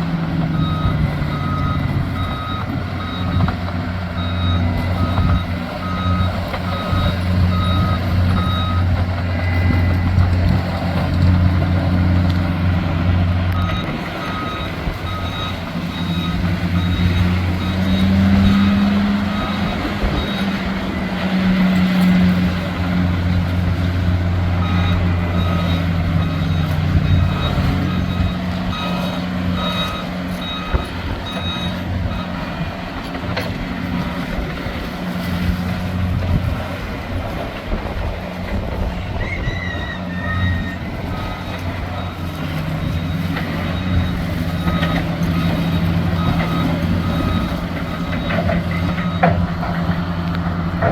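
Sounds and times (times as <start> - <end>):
diesel engine running: 0.0 - 50.9
backup alarm beeping: 4.2 - 10.1, 13.5 - 20.8, 24.6 - 32.4.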